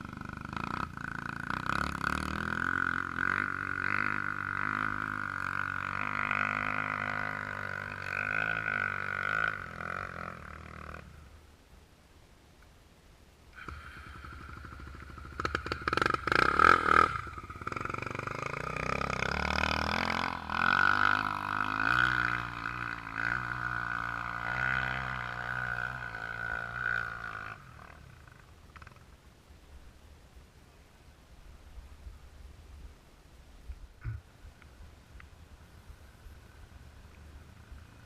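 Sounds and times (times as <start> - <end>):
motorcycle engine under throttle: 0.0 - 11.1, 13.6 - 29.1.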